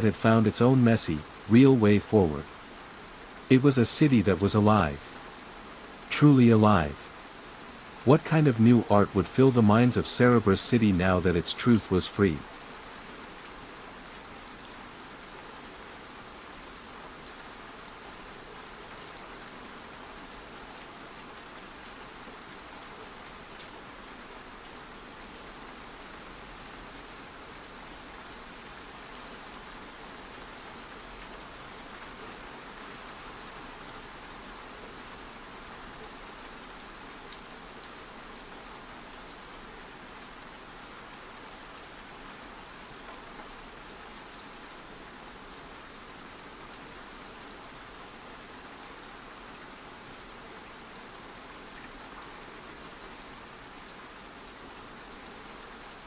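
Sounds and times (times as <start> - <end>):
rain pattering: 0.0 - 56.0.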